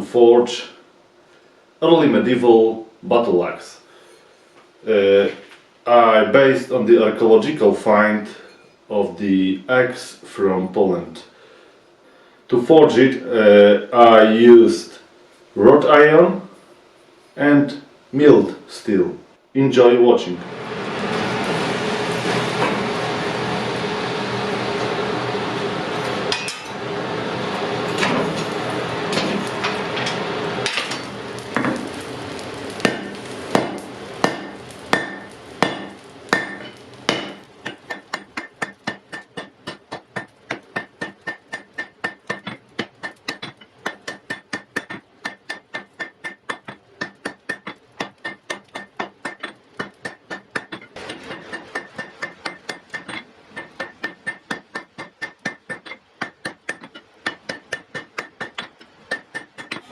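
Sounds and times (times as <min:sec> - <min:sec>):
hammer blows on hot iron: 0:20.4 - 0:59.9
anvil ringing: 0:26.3 - 0:26.8, 0:27.9 - 0:59.9.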